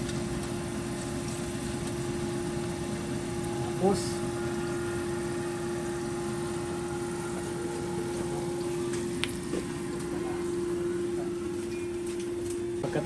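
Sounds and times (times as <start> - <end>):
electrical hum: 0.0 - 13.0.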